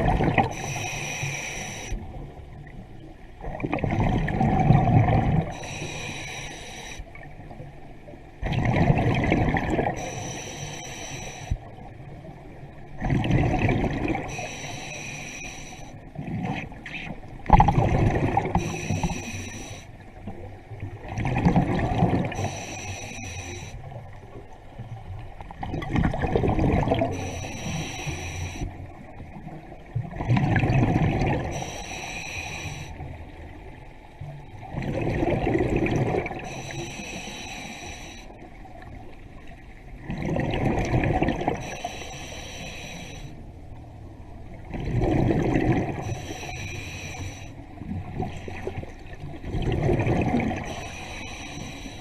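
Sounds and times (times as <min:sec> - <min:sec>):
bubbles gurgling: 0:00.0 - 0:00.5, 0:03.4 - 0:05.5, 0:08.4 - 0:10.0, 0:13.0 - 0:14.3, 0:17.4 - 0:18.6, 0:20.9 - 0:22.5, 0:25.6 - 0:27.2, 0:29.9 - 0:31.5, 0:34.6 - 0:36.4, 0:40.0 - 0:41.6, 0:44.7 - 0:46.0, 0:47.9 - 0:50.8
diver inhaling through regulator: 0:00.4 - 0:02.0, 0:05.4 - 0:07.1, 0:09.8 - 0:11.7, 0:14.2 - 0:16.0, 0:18.4 - 0:20.0, 0:22.2 - 0:23.8, 0:26.9 - 0:28.8, 0:31.4 - 0:33.1, 0:36.3 - 0:38.4, 0:41.5 - 0:43.4, 0:45.9 - 0:47.6, 0:50.6 - 0:52.0.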